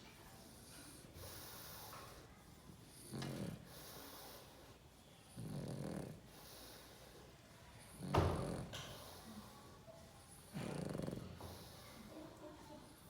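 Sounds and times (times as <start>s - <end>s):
dog breathing: 0.6s - 12.2s
dog snoring: 2.9s - 4.5s, 5.3s - 6.9s, 7.8s - 9.2s, 10.5s - 11.8s.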